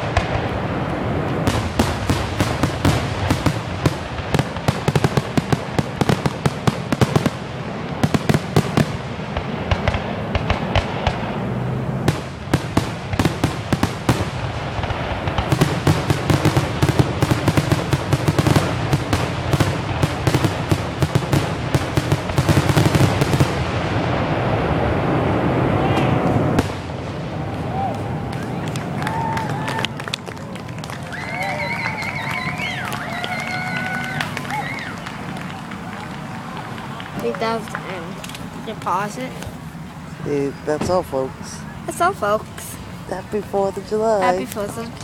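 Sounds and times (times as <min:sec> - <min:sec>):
firework pops and bangs: 0:00.0 - 0:11.4, 0:12.1 - 0:24.3, 0:25.9 - 0:39.6
low rumble of booms: 0:00.0 - 0:29.1, 0:37.0 - 0:41.9.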